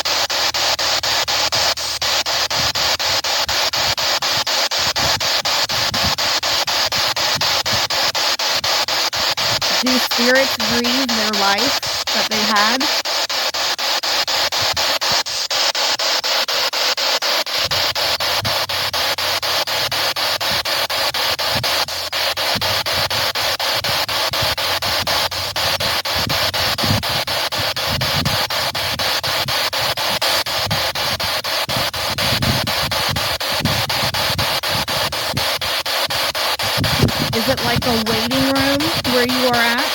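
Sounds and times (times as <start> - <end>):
fragments of broadcast sound: 0.0 - 16.5, 36.6 - 39.9
radio static sweeping with ticking: 0.0 - 39.9.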